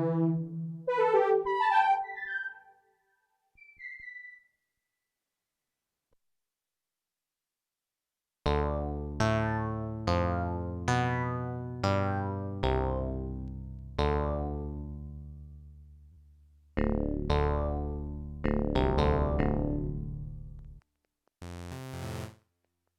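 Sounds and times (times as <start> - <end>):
synthesizer notes: 0.0 - 2.8, 16.8 - 20.4.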